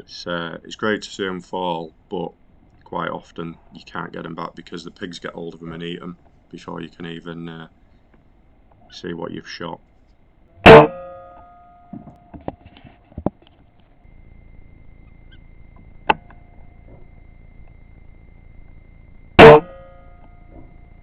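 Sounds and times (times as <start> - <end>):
air rifle shot with metallic ring: 10.7 - 11.6, 19.4 - 19.9.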